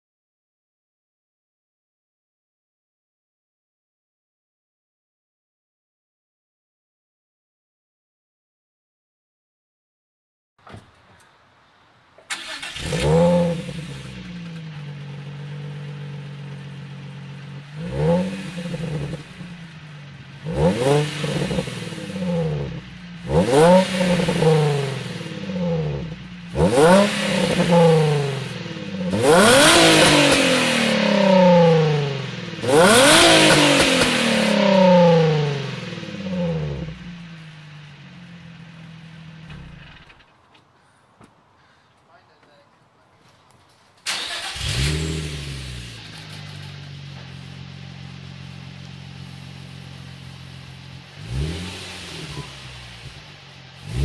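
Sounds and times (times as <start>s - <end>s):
car engine starting: 10.7s - 40.4s, 44.0s - 54.0s
car engine idling: 11.0s - 40.2s, 44.0s - 54.0s
car engine revving: 12.3s - 40.2s, 44.1s - 54.0s.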